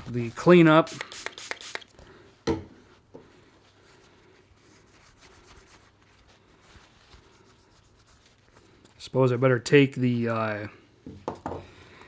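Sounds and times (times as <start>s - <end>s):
cloth rubbing on metal parts: 0.0s - 1.9s, 3.4s - 8.8s.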